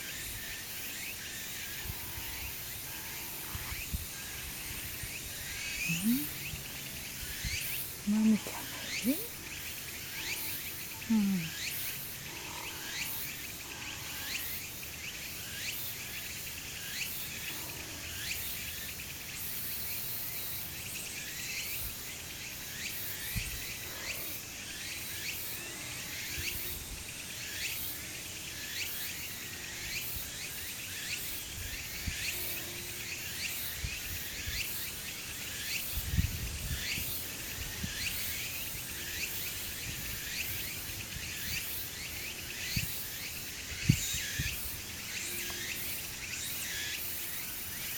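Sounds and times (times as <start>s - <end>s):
insect chirps: 0.0s - 47.9s.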